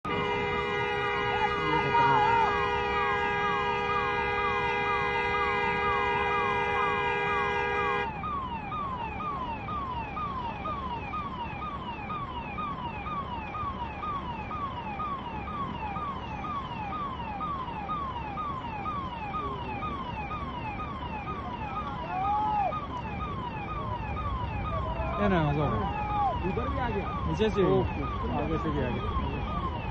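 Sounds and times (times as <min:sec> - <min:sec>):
multi-tone horn blaring: 0:00.0 - 0:08.3
electronic siren wailing: 0:00.1 - 0:29.9.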